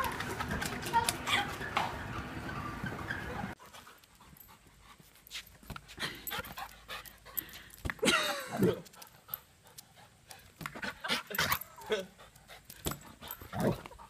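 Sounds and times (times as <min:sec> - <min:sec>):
dog panting: 0:02.6 - 0:07.8, 0:08.8 - 0:14.0.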